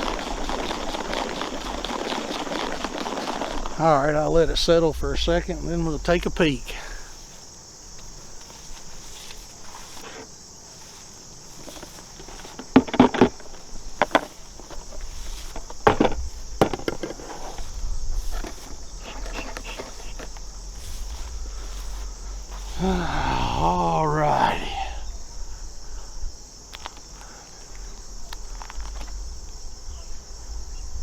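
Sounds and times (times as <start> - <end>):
insects chirring: 0.0 - 31.0
knocks and rustles from handling: 8.0 - 22.7.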